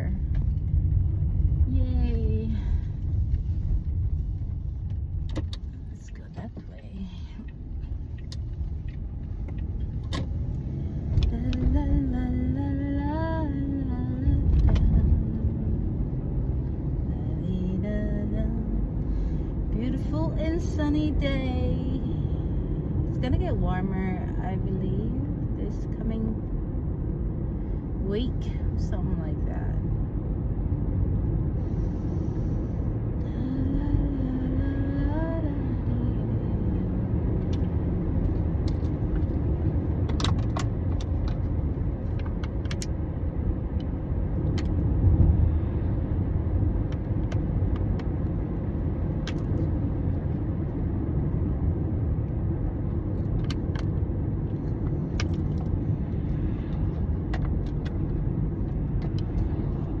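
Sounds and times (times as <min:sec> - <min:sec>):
steady low rumble: 0:00.0 - 1:00.0.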